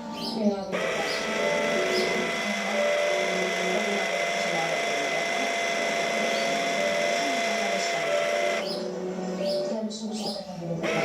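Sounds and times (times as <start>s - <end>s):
linear actuator motor whining: 0.6s - 8.8s, 10.8s - 11.0s
loud grinding noise: 0.7s - 8.7s.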